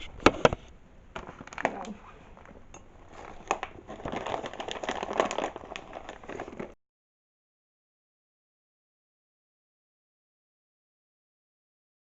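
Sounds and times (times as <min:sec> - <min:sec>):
crinkling rattle: 0:01.2 - 0:06.8.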